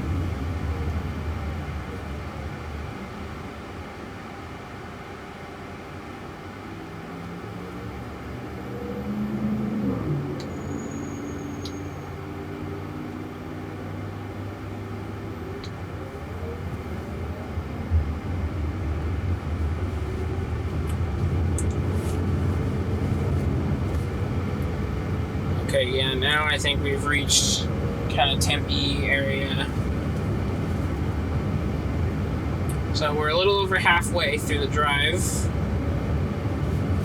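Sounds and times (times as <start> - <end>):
faint motor whine: 0.0 - 37.0
tyre and road rumble: 15.2 - 37.0.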